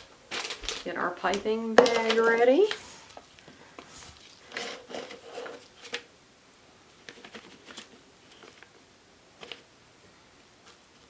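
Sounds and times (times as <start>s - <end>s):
plastic piping bag rustling: 0.0s - 6.0s.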